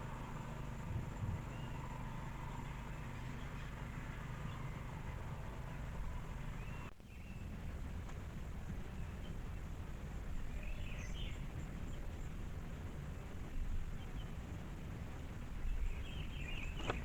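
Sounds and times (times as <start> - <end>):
faint bird chirps: 0.0 - 7.6
low outdoor rumble: 0.0 - 17.0.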